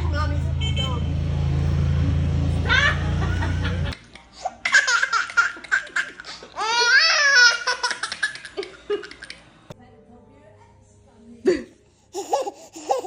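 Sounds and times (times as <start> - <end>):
baby laughing: 4.4 - 9.4, 12.1 - 13.0.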